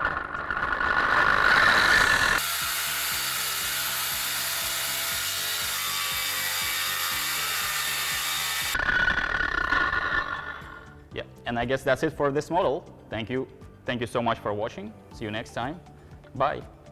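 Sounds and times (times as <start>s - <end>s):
angle grinder running: 0.0s - 11.0s
background music: 2.4s - 8.8s, 10.4s - 16.9s.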